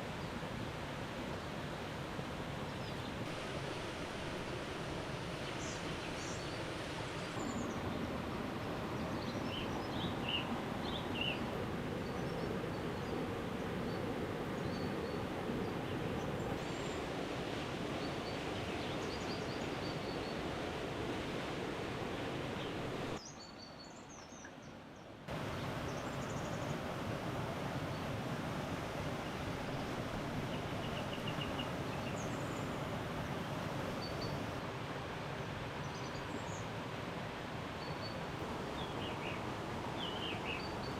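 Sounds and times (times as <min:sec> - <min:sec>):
forest background noise: 0:00.0 - 0:40.9.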